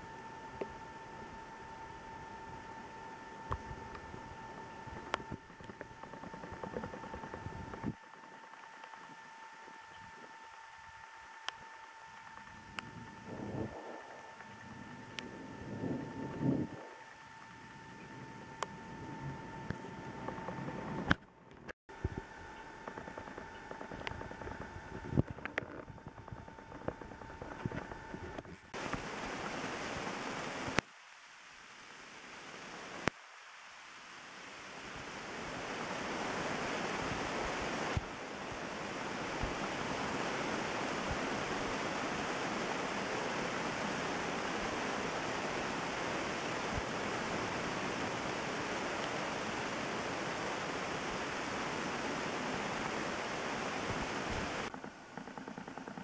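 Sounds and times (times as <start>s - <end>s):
click: 0.6s - 0.8s, 12.2s - 12.9s
heavy rain pouring: 28.8s - 54.7s.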